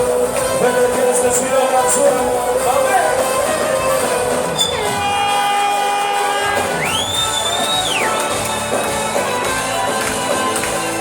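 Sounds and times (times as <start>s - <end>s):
live band music: 0.0s - 11.0s
crowd cheering: 4.7s - 11.0s.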